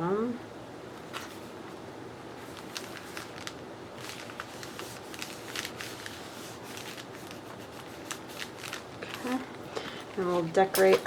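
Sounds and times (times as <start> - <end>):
faint steady hum: 0.0 - 11.0
paper crinkling: 2.3 - 11.0.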